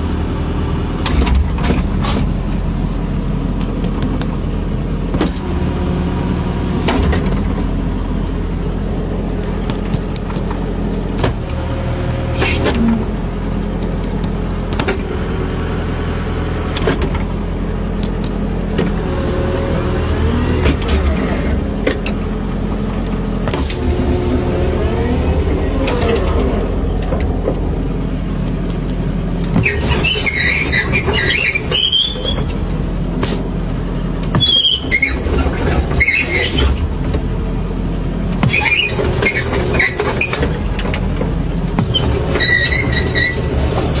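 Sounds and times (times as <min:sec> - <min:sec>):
high-pitched squeals: 0:29.6 - 0:32.6, 0:34.4 - 0:36.8.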